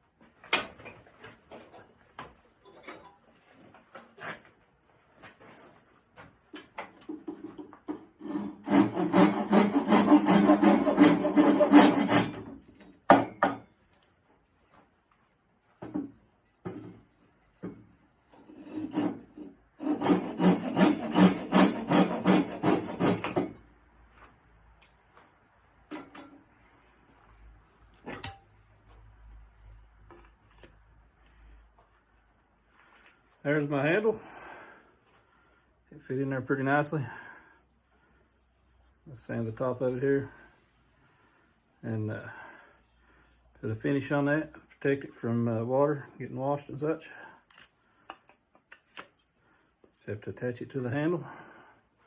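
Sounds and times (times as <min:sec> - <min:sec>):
rasping friction on lathe: 0:08.2 - 0:12.4, 0:18.5 - 0:23.4.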